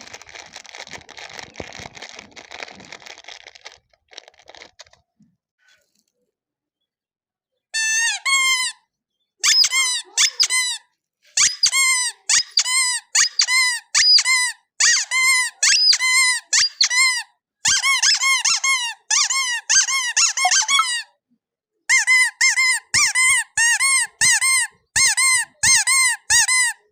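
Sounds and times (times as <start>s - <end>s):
squeaky toy squeaks: 7.8s - 21.1s, 21.9s - 26.8s.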